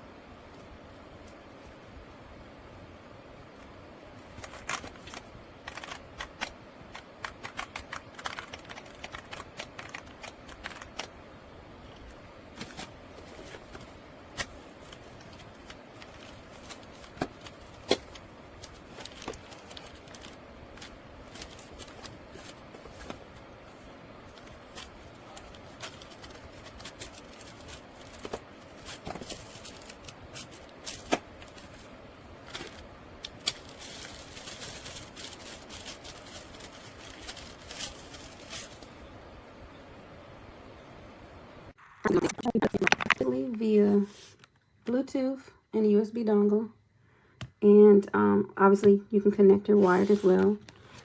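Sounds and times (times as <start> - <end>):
mechanical keyboard clicks: 5.6 - 11.1.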